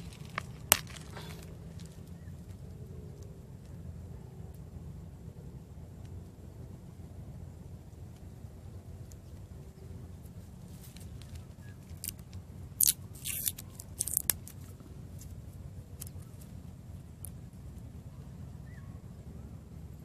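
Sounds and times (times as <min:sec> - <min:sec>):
firecrackers cracking and popping: 0:00.0 - 0:01.6.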